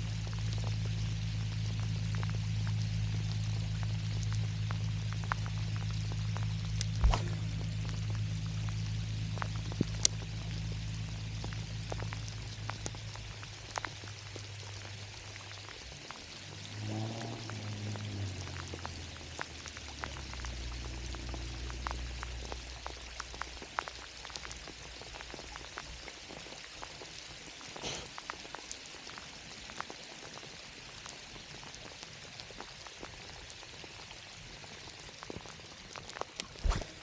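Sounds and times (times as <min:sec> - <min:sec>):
low hum: 0:00.0 - 0:25.7, 0:36.4 - 0:37.0
rain falling: 0:00.0 - 0:37.0.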